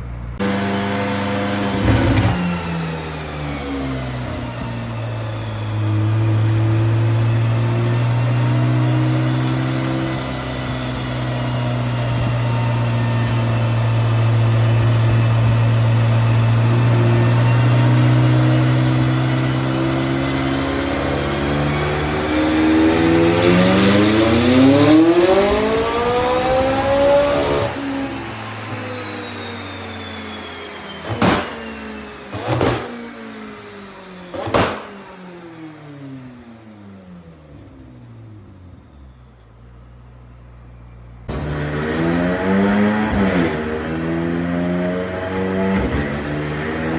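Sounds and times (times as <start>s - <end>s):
engine whine winding down: 0.0s - 46.9s
sports car engine revving: 0.2s - 28.8s, 30.8s - 37.6s, 41.3s - 46.9s
exhaust backfires: 31.0s - 35.7s.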